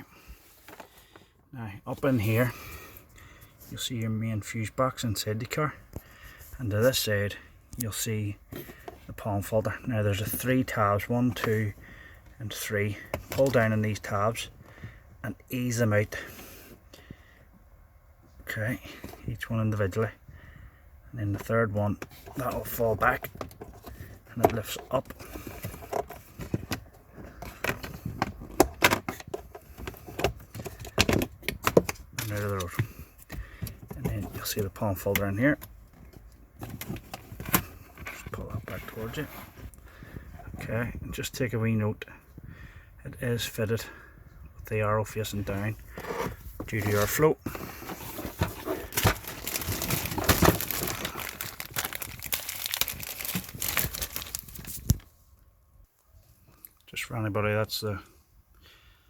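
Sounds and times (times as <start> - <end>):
plastic filter parts crackling: 21.3 - 39.8, 45.8 - 55.1.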